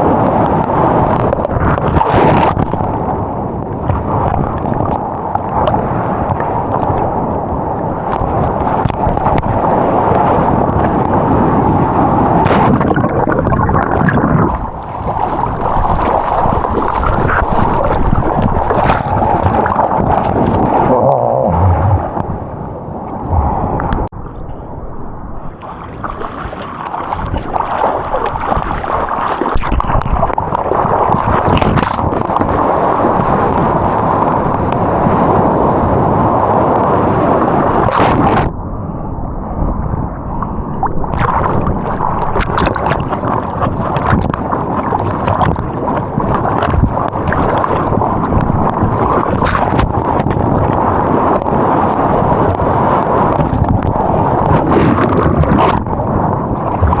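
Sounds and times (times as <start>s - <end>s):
seawater rushing and sloshing: 0.0s - 57.0s
wind noise: 0.0s - 57.0s
splashes and knocks: 12.4s - 20.8s, 26.0s - 32.6s, 41.0s - 50.5s, 53.3s - 55.9s, 56.6s - 57.0s.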